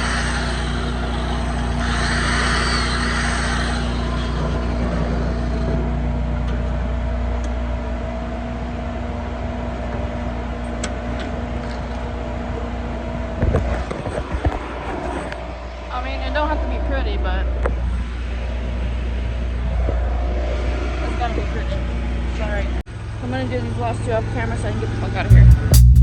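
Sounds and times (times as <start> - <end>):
welding machine humming: 0.0 - 8.6.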